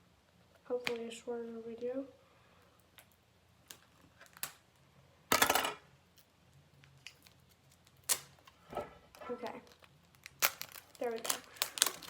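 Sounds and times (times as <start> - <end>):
plastic crackling: 2.9 - 12.0.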